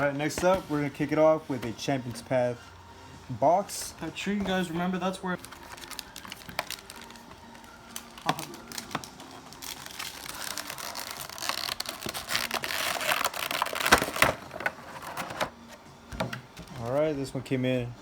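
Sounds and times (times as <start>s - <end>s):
plastic and cardboard crinkling: 3.7s - 17.2s.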